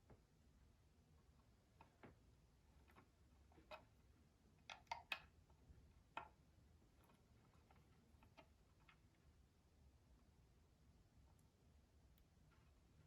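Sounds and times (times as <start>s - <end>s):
light clicks and taps of small parts: 6.1s - 6.4s.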